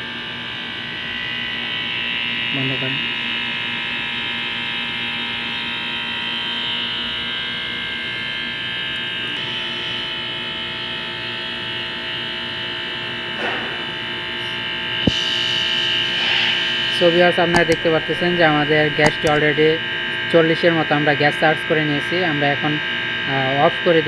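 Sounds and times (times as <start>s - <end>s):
air conditioner humming: 5.8s - 24.0s
sharp click: 15.1s - 15.4s, 17.5s - 19.5s.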